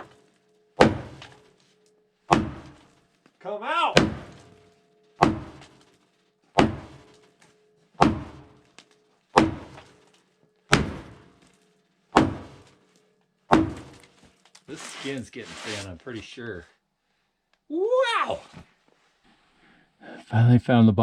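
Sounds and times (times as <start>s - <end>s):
heavy strikes on steel blade: 0.8s - 1.4s, 2.3s - 2.9s, 4.0s - 4.6s, 5.2s - 5.8s, 6.6s - 7.2s, 8.0s - 8.7s, 9.4s - 9.9s, 10.7s - 11.4s, 12.2s - 12.8s, 13.5s - 14.1s.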